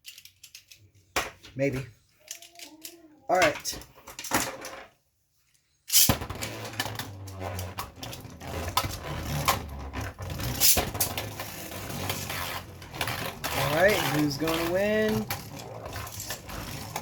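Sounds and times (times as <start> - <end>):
spinning tops clacking together: 5.9 - 6.2, 10.5 - 17.0
spinning tops whirring: 5.9 - 17.0.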